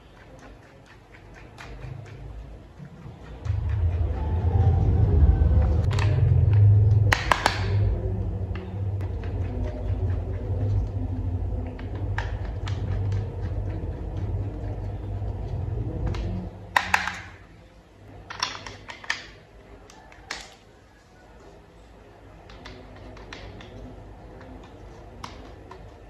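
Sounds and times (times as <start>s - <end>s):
low steady hum: 0.0s - 26.0s
plastic toy parts clicking: 16.7s - 17.4s, 18.2s - 20.6s, 22.5s - 23.8s, 24.4s - 26.0s.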